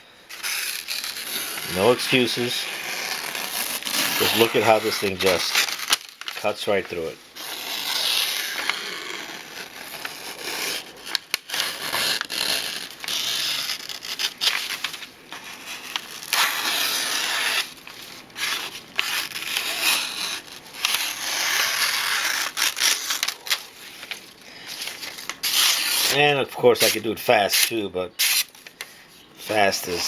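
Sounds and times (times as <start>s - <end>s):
knife slicing paper: 0.3s - 28.6s.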